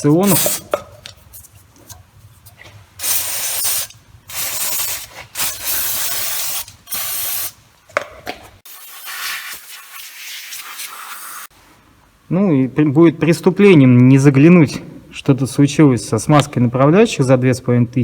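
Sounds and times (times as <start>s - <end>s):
aerosol spray hissing: 0.2s - 0.7s, 3.0s - 7.6s, 8.7s - 11.5s
quiet steady hiss: 11.4s - 18.0s.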